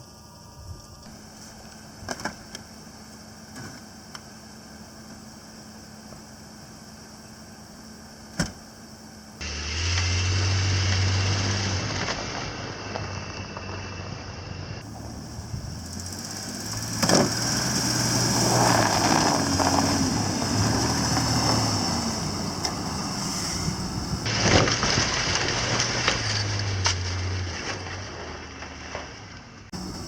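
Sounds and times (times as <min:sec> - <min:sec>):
truck engine revving: 0:09.4 - 0:29.0.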